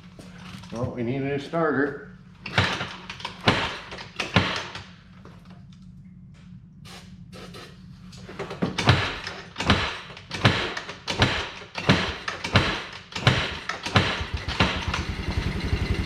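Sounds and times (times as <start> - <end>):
engine turning over slowly: 13.2 - 16.0.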